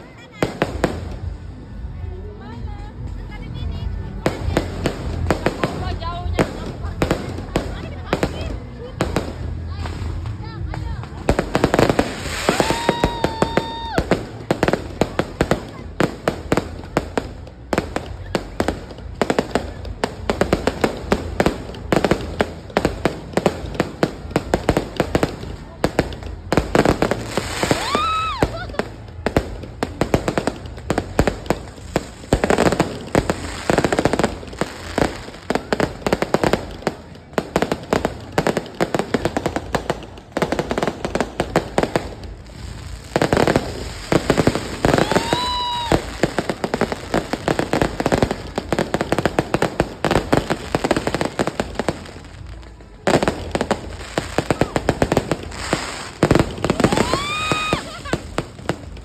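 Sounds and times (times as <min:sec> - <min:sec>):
fireworks crackling and banging: 0:00.0 - 0:59.0
rising firework whistle: 0:12.2 - 0:14.1, 0:44.8 - 0:46.2, 0:56.7 - 0:58.2.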